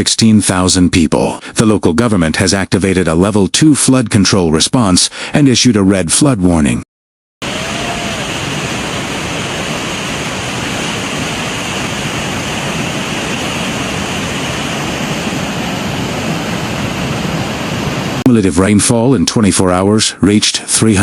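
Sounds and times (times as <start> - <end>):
floodwater rushing: 7.4 - 18.2.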